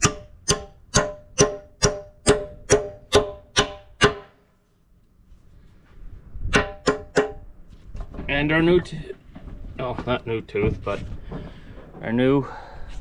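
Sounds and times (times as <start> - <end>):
hammer striking steel pin: 0.0 - 4.4, 6.5 - 7.4.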